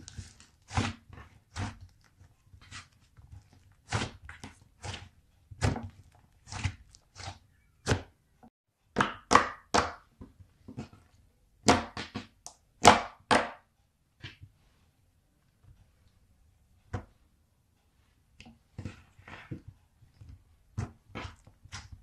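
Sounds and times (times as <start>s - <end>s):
slime squishing and slapping: 0.0s - 8.1s.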